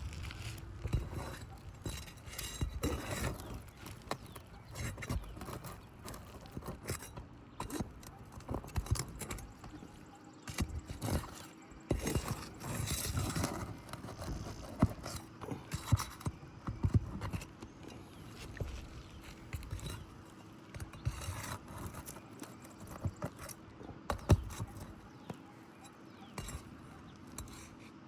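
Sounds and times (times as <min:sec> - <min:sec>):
hand tools knocking on shingles: 0:24.1 - 0:25.4.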